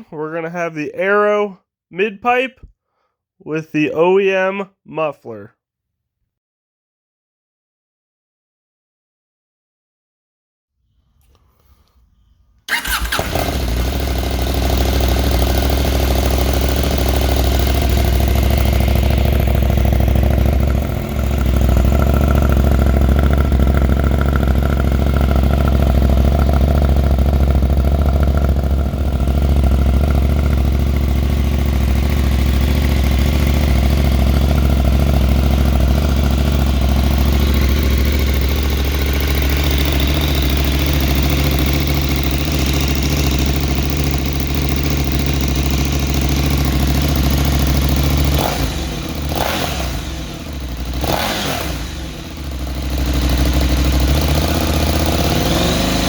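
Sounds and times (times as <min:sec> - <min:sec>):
motorcycle engine idling: 0:12.7 - 0:56.0.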